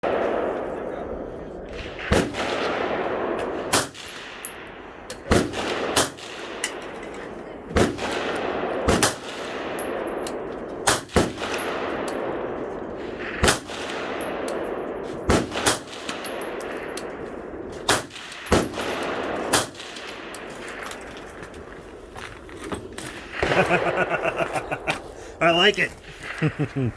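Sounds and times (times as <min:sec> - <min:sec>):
suppressed rifle shots: 0:02.0 - 0:07.0, 0:07.7 - 0:21.1.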